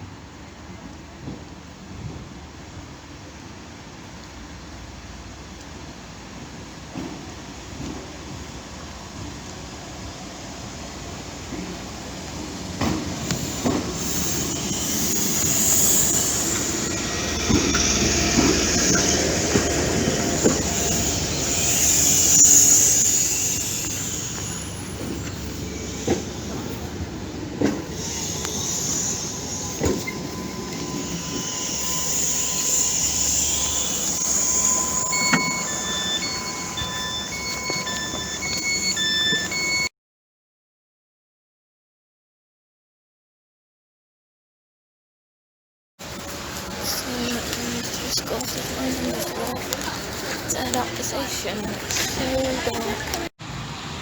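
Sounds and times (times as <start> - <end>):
wheels clicking over rail joints: 11.4 - 39.9
train wheels squealing and hissing: 12.9 - 39.9
steady tone: 14.5 - 39.9
short electronic beeps: 29.2 - 39.9.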